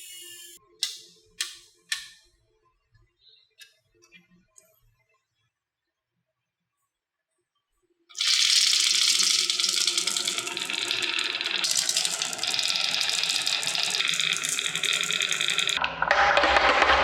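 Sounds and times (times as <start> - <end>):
marbles rattling down a track: 8.2 - 17.0.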